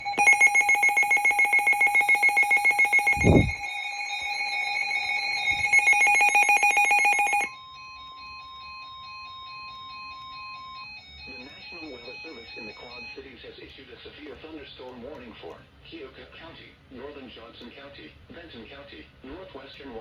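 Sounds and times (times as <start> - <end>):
pulsing electronic alert tone: 0.0 - 7.5.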